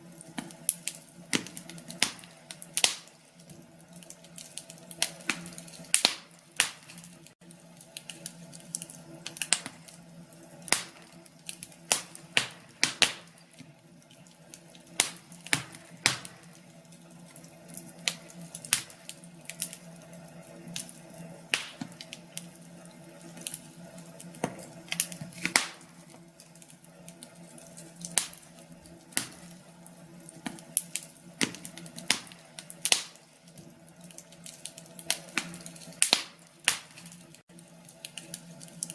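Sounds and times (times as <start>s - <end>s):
wood fire crackling and popping: 0.0s - 38.9s.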